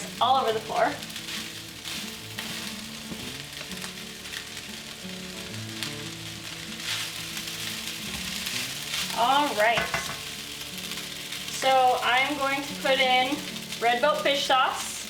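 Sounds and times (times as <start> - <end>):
rice sizzling in hot oil: 0.0 - 15.0
spoon scraping pan: 1.0 - 3.3, 6.8 - 11.8.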